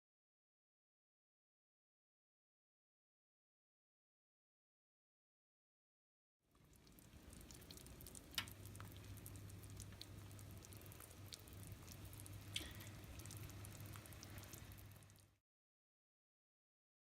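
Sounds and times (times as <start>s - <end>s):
soup bubbling and popping: 6.5s - 15.4s
low steady hum: 6.6s - 15.4s.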